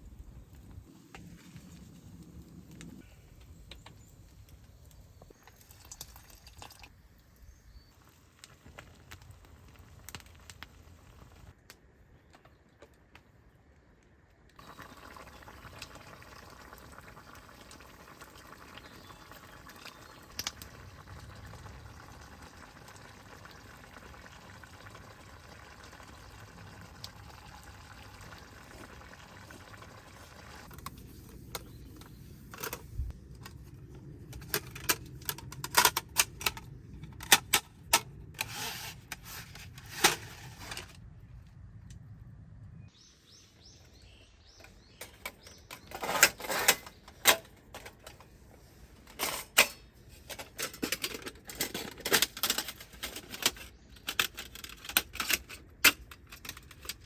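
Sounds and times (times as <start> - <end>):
liquid pouring: 5.6 - 6.9, 14.6 - 30.7
pot simmering: 14.6 - 30.8.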